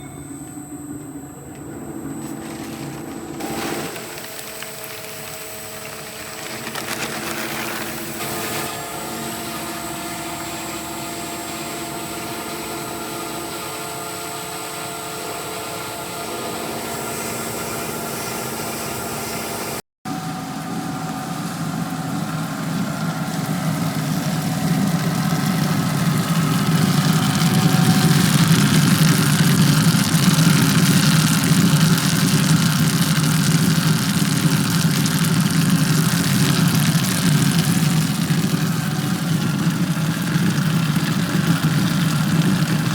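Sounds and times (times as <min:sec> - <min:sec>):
machine humming: 0:00.0 - 0:42.9
rough grinding noise: 0:02.1 - 0:10.1.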